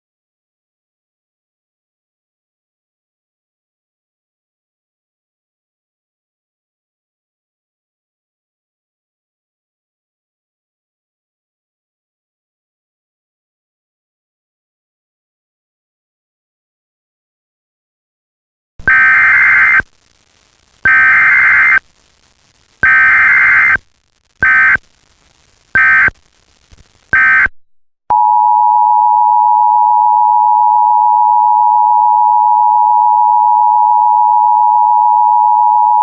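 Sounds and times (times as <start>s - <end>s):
harsh digital data tone bursts: 18.8s - 19.9s, 20.8s - 21.9s, 22.8s - 24.8s, 25.7s - 26.2s, 27.1s - 27.5s.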